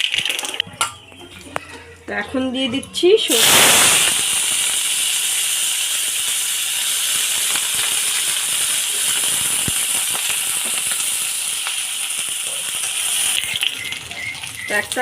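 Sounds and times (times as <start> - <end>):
seeds sizzling in hot oil: 3.3 - 15.0
small pops and crackles: 7.2 - 14.0.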